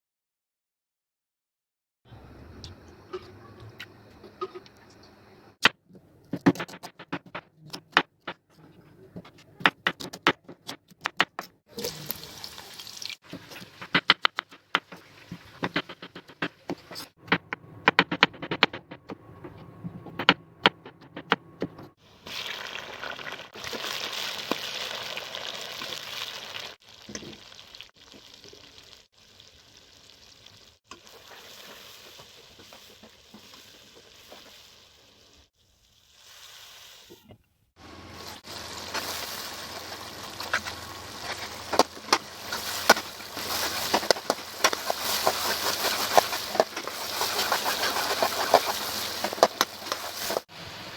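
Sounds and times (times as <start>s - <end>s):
utensils tapping and clicking: 40.4s - 50.5s.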